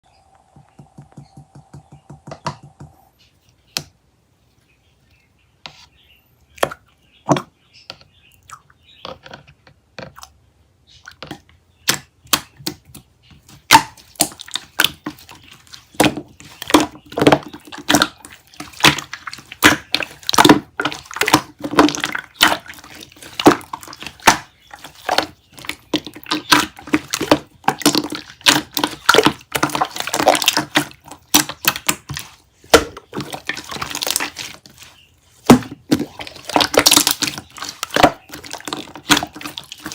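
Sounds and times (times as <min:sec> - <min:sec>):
crackles and clicks from handled objects: 0:11.2 - 0:39.9.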